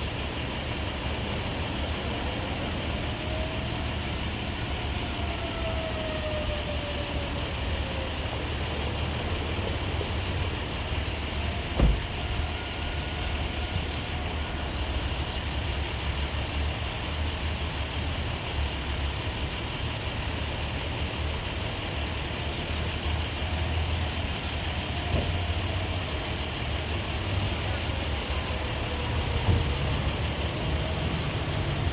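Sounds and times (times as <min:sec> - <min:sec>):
distant warning siren: 0:00.0 - 0:31.9
heavy truck engines rumbling: 0:00.0 - 0:31.9
sharp thump: 0:11.8 - 0:12.0.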